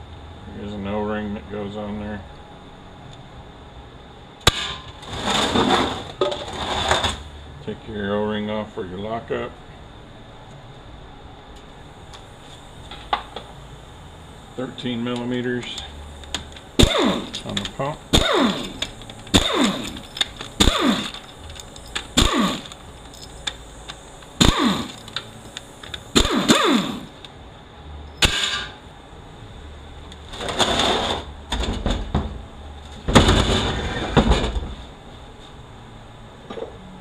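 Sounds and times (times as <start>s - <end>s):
power tool whirring: 15.8s - 27.3s.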